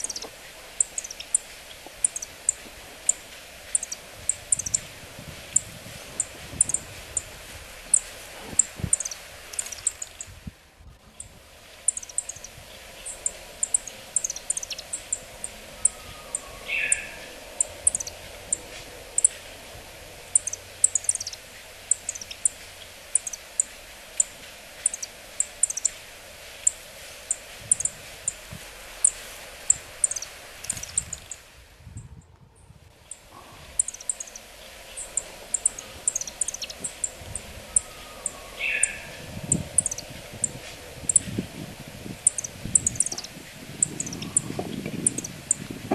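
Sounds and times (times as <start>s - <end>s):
high thin bird calls: 0.0s - 4.9s, 5.5s - 7.3s, 7.9s - 10.3s, 11.9s - 19.4s, 20.3s - 26.0s, 26.6s - 31.4s, 33.0s - 41.4s, 42.2s - 45.6s
lower loud bird call: 11.9s - 26.0s, 33.1s - 41.6s.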